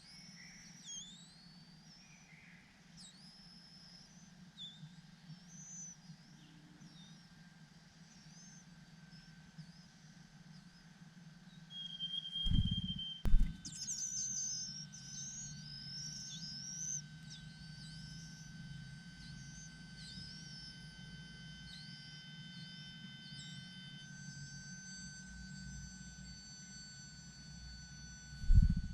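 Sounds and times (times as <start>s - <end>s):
birds chirping: 12.4s - 14.0s
low thump: 12.5s - 13.6s
sharp click: 12.5s - 13.7s.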